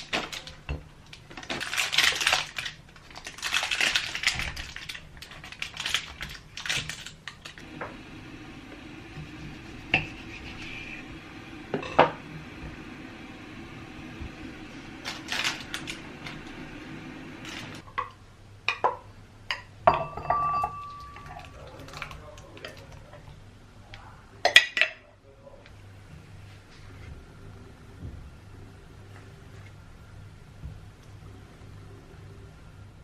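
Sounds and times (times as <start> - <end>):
steady low hum: 7.6 - 24.4, 25.2 - 33.0
kitchenware clattering: 18.7 - 22.9.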